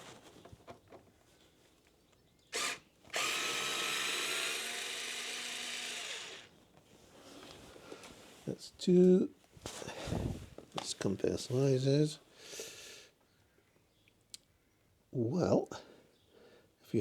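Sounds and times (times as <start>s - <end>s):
electric screwdriver motor: 2.5s - 6.5s.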